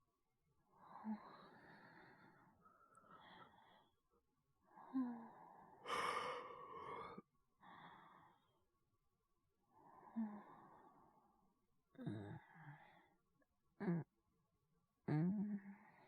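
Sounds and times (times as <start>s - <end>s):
man breathing heavily: 5.8s - 7.2s.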